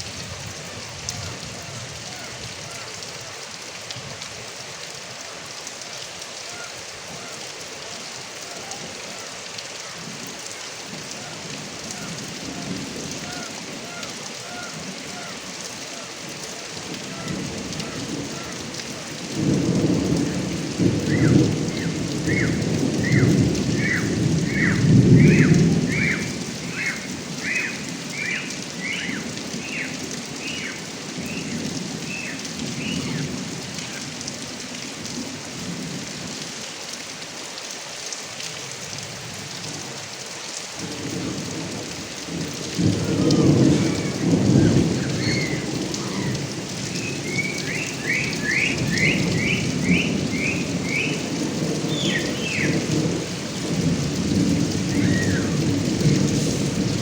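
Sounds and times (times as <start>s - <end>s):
heavy rain on roof: 0.0s - 57.0s
rolling thunder: 19.2s - 28.2s, 40.8s - 57.0s.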